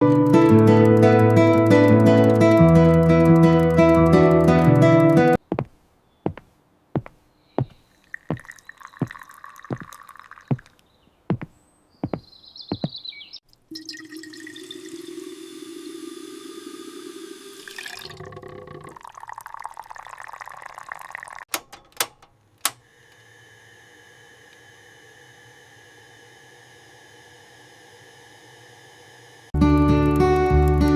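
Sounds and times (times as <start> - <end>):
water pouring: 7.9 - 10.8, 13.5 - 21.5.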